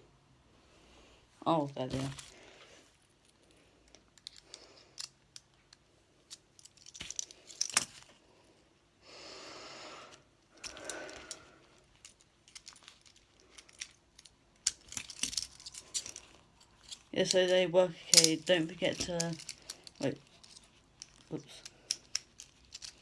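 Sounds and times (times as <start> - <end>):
handcuffs clicking: 3.8 - 7.9, 10.6 - 23.0
metal keys jangling: 12.0 - 23.0.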